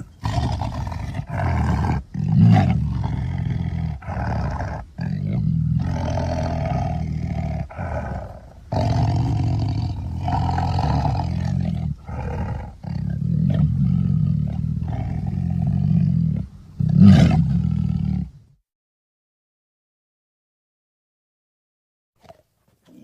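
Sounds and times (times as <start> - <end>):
deep dinosaur roars: 0.0 - 18.4.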